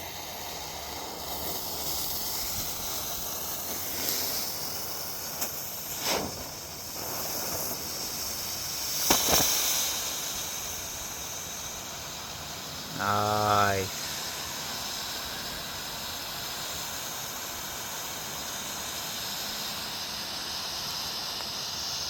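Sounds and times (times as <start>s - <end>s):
fireworks hissing: 0.0s - 22.0s
firework pops: 1.2s - 12.2s.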